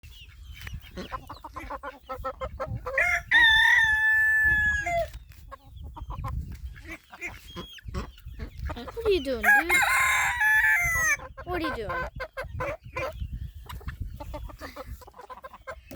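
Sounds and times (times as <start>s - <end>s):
chickens clucking: 0.0s - 15.9s
rooster crowing: 3.0s - 5.1s, 9.4s - 11.2s.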